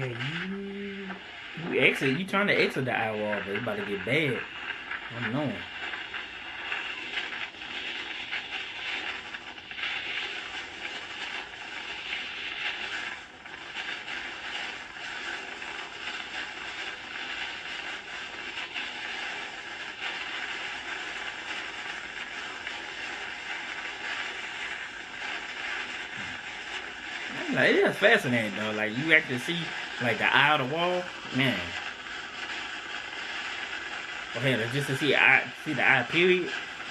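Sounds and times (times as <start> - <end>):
fine crackle: 0.0 - 36.9.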